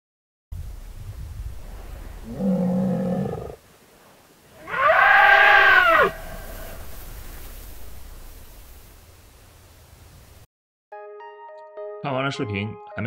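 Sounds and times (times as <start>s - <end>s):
low grunting animal call: 2.2s - 3.6s
trumpet-like animal call: 4.6s - 6.9s.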